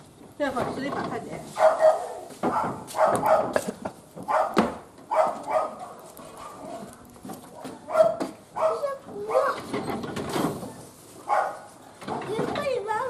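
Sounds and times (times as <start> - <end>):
dog barking: 1.6 - 3.6, 4.3 - 6.8, 7.5 - 9.6, 11.3 - 11.7.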